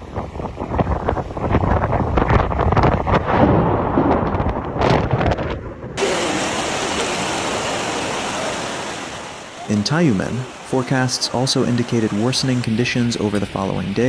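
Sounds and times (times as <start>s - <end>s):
wind buffeting microphone: 0.0s - 12.7s
heavy downpour hiss: 6.0s - 12.7s.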